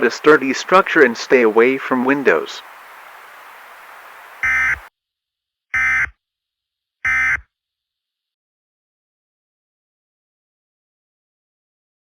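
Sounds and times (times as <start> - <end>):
faint radio hiss: 0.0 - 4.9.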